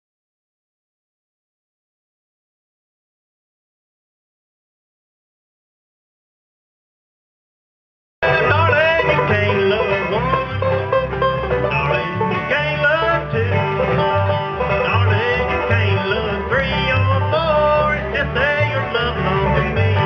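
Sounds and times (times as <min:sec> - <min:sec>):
banjo picking: 0:08.2 - 0:20.0
bass line: 0:08.2 - 0:20.0
guitar: 0:08.2 - 0:20.0.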